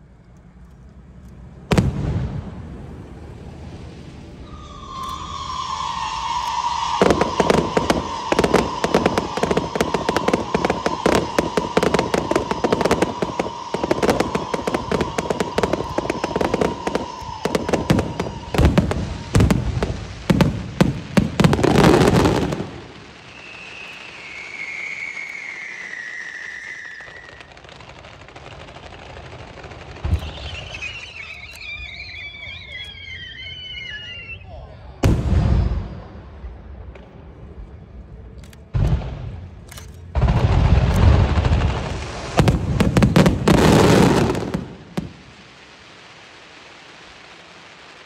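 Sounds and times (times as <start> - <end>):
fireworks bangs and crackles: 0.0 - 48.0
falling tone: 1.7 - 19.3.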